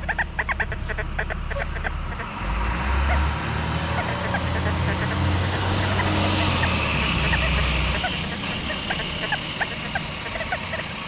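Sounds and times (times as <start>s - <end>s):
steady low rumble: 3.8s - 11.0s.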